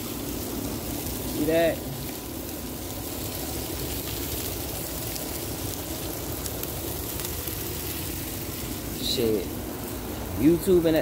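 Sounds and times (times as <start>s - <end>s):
meat sizzling on grill: 0.0s - 11.0s.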